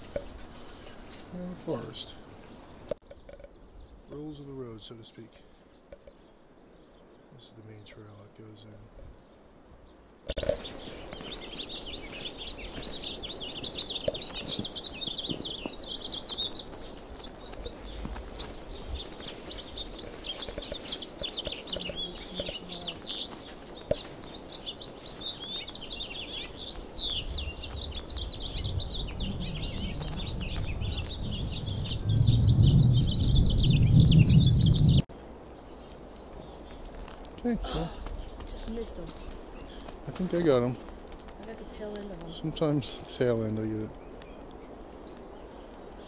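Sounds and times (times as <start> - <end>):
small birds chirping: 0.0 - 46.0
low rumbling noise: 26.9 - 36.6.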